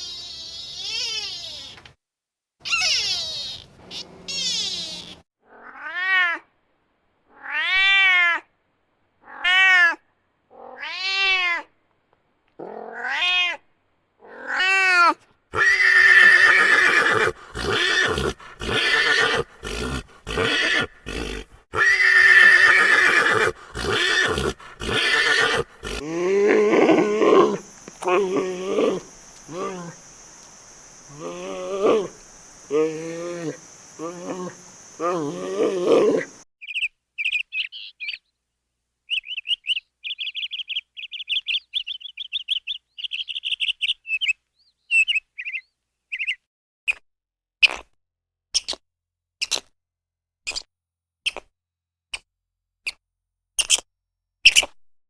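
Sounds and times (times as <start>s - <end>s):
short pitched animal calls: 0.0s - 1.8s, 2.6s - 5.2s, 15.6s - 36.4s
loud harsh animal calls: 2.6s - 5.6s, 15.6s - 36.4s.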